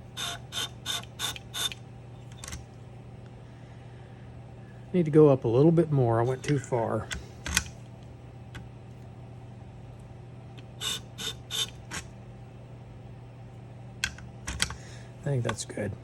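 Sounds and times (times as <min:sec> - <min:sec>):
sharpening machine motor humming: 0:00.0 - 0:02.5, 0:10.6 - 0:12.1
ratchet-like mechanical clicks: 0:00.2 - 0:01.8.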